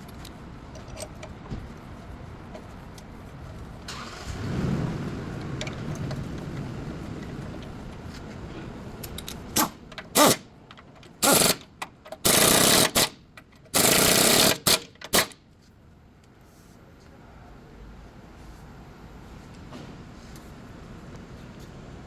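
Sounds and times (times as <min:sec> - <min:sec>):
impact wrench bursts: 0:09.6 - 0:10.5, 0:11.2 - 0:15.4.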